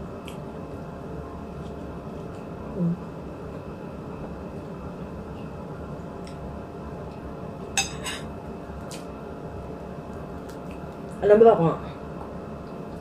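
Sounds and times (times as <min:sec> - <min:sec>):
low room hum: 0:00.0 - 0:13.0
cutlery clinking against a dish: 0:07.8 - 0:08.3.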